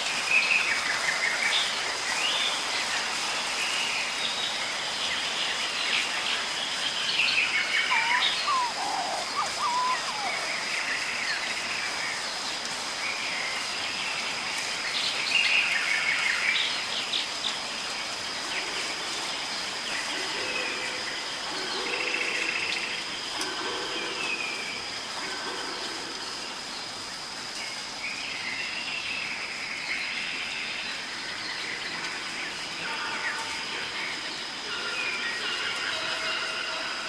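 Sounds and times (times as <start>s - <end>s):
rain hiss: 0.0s - 37.0s
birds chirping: 6.8s - 11.6s.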